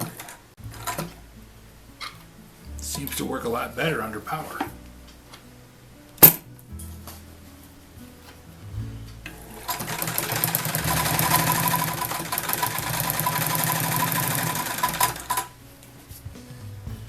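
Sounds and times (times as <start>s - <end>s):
motor hum: 4.6s - 17.0s
sewing machine stitching: 9.2s - 15.5s.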